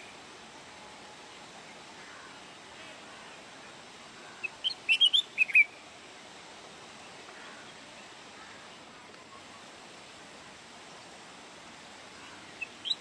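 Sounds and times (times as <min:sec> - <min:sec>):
faint steady hiss: 0:00.0 - 0:13.0
songbird chirping: 0:00.0 - 0:13.0.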